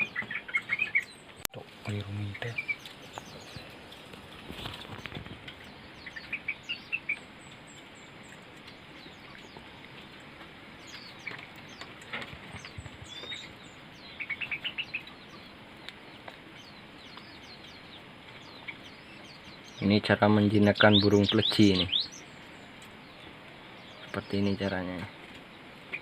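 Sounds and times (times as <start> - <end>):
high bird chirps: 0.0 - 1.4, 2.3 - 3.8, 4.5 - 10.1, 10.8 - 26.0
bird wings fluttering: 2.9 - 5.8, 9.5 - 13.5.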